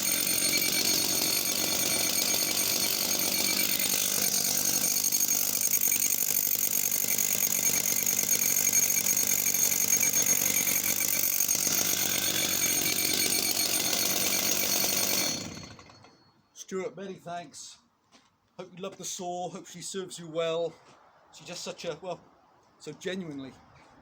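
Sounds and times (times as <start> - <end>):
chainsaw running at high revs: 0.0 - 15.8.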